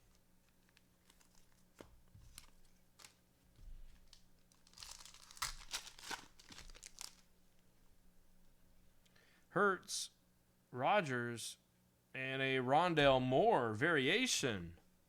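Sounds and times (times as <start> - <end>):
wrapper crinkling and tearing: 0.4 - 3.2, 3.9 - 7.3.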